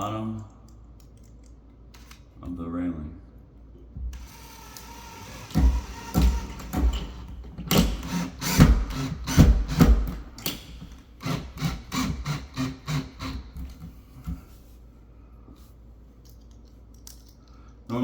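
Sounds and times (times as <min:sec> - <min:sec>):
drill driving screws: 0:04.1 - 0:13.9.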